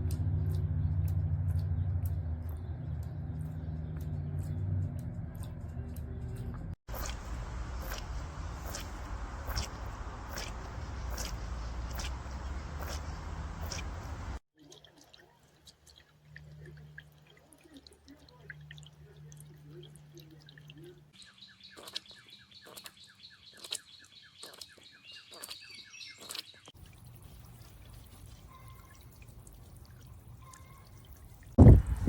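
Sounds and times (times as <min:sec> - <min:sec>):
fountain water trickling and dripping: 0:06.9 - 0:21.2, 0:24.4 - 0:32.0
bird chirping: 0:07.0 - 0:14.4, 0:20.8 - 0:26.7.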